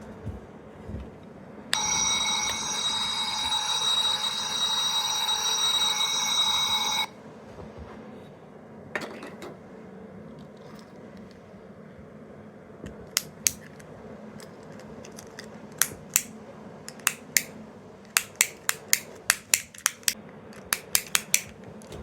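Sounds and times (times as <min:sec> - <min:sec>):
high electronic ringing: 0:01.8 - 0:07.1.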